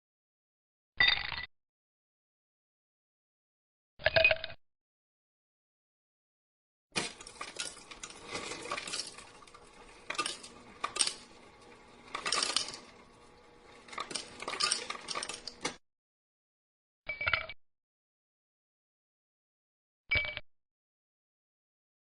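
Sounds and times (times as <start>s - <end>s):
ice cubes clinking in glass: 7.0s - 11.4s, 12.1s - 13.0s, 13.9s - 15.6s.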